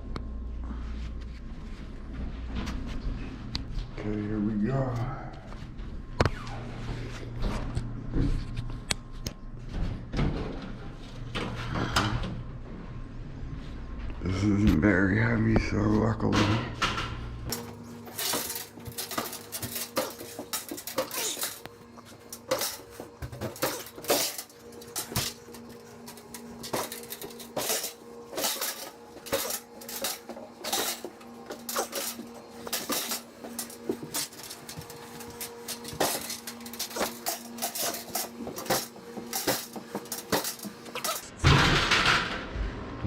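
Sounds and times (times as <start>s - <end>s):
metal panels clinking and knocking: 16.3s - 42.4s.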